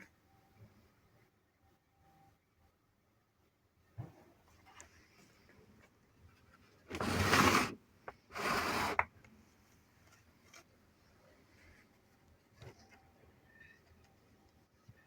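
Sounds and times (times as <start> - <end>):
short rubbing noises: 6.9 - 9.0.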